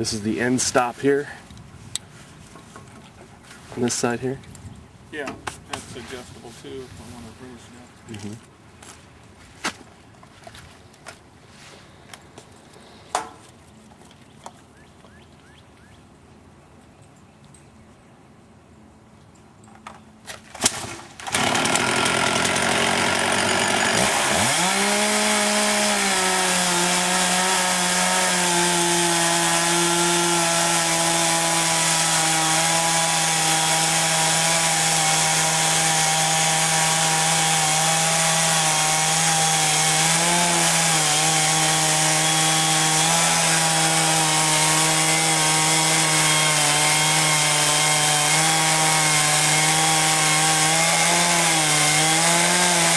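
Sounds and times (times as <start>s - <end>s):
saw cutting: 20.7s - 52.9s
sawmill gas engine running: 21.3s - 24.4s.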